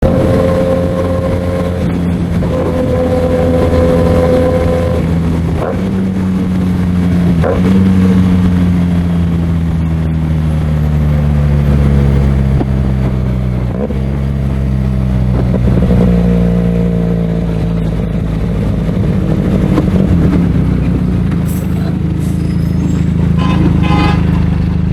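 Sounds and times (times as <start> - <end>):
engine rev blips: 0.0 - 16.4, 22.2 - 24.9
motorcycle engine at speed: 0.0 - 24.9.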